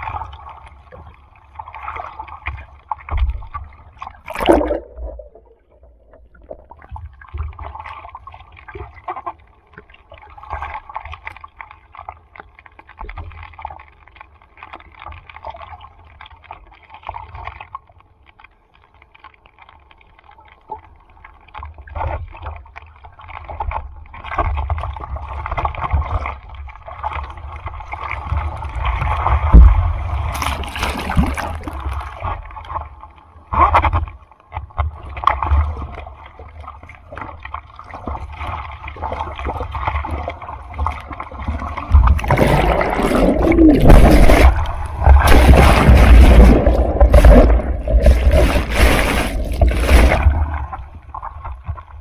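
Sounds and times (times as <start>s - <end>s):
sea water sloshing and splashing: 0.0s - 52.0s
whitewater breaking: 4.3s - 6.7s, 29.6s - 32.1s, 41.9s - 50.7s.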